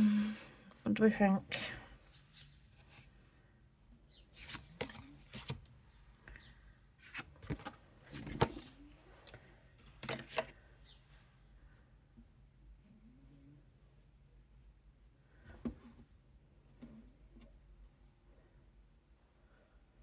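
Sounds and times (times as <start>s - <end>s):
cards tapping and rustling: 4.4s - 5.7s, 7.0s - 8.8s, 9.8s - 10.6s.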